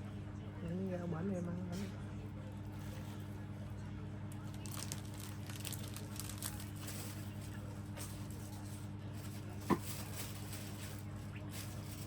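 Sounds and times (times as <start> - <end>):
low electrical hum: 0.0 - 12.0
eating and tableware noises: 4.4 - 12.0.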